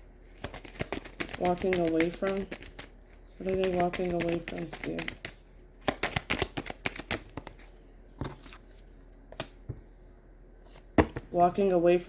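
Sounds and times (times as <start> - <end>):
cards being shuffled: 0.2 - 9.5.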